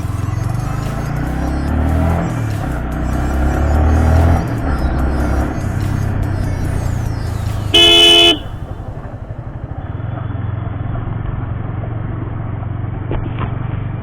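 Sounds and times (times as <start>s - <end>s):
engine humming: 0.0s - 13.1s
vehicle horn: 7.6s - 9.0s.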